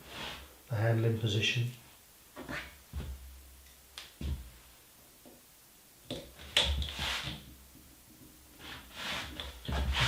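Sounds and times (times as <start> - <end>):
rustling scrape: 0.0 - 0.5, 6.8 - 7.4, 8.6 - 10.0.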